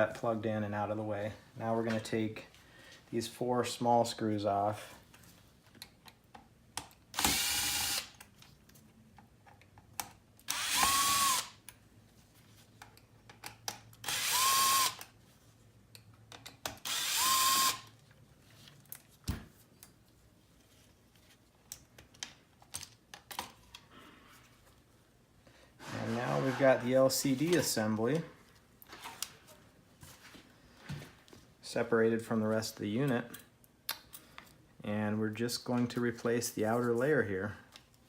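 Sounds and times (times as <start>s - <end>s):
power screwdriver whirring: 7.2s - 8.2s, 10.5s - 11.6s, 14.0s - 15.1s, 16.8s - 17.9s.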